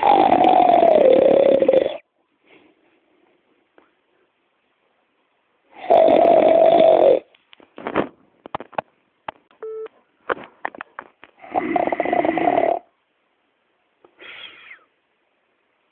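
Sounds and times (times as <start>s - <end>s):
loud snore: 0.0s - 2.0s, 5.8s - 7.3s, 11.4s - 12.9s.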